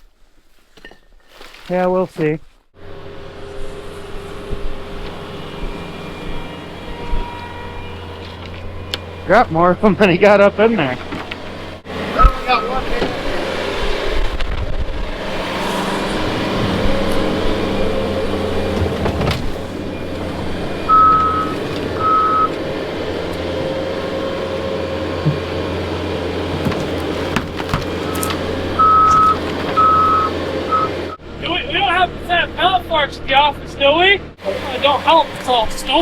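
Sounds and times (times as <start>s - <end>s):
loader engine running: 2.8s - 36.0s
reversing alarm beeping: 5.4s - 9.6s, 12.1s - 13.2s, 19.8s - 23.2s, 28.0s - 31.2s.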